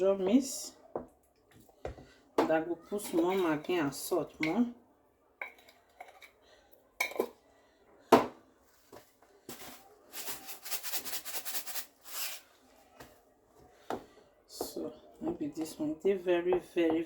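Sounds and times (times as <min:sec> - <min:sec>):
spoon scraping pot: 0:02.9 - 0:04.6, 0:05.4 - 0:06.4.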